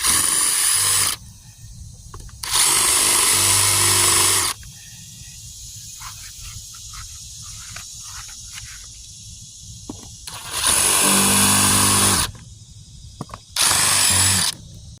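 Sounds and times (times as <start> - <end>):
power drill drilling: 0.0 - 1.2, 2.4 - 4.6, 10.3 - 12.3, 13.6 - 14.6.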